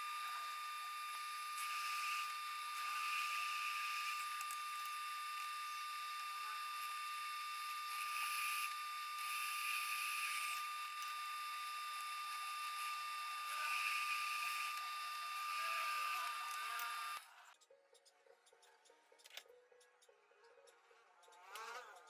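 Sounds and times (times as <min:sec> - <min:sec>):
power tool whining: 0:00.0 - 0:17.5.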